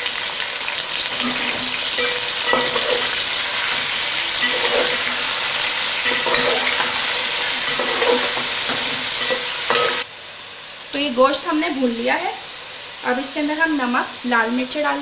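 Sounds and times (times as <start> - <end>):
meat sizzling in hot oil: 0.0 - 15.0
spoon scraping pot: 1.1 - 10.0.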